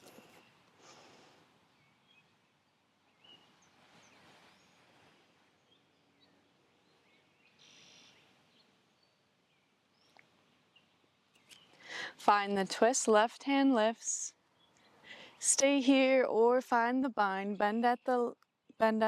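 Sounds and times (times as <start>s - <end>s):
soft breathy swells: 3.7s - 5.5s
faint bird chirps: 5.5s - 11.8s.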